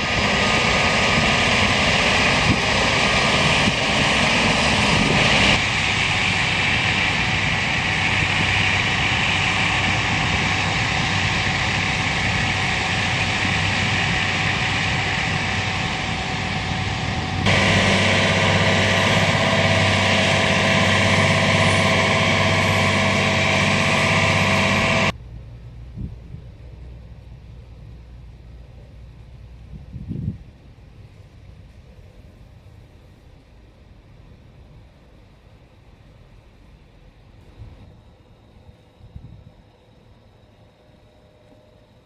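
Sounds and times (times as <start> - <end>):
diesel farm machinery running: 0.0 - 25.9.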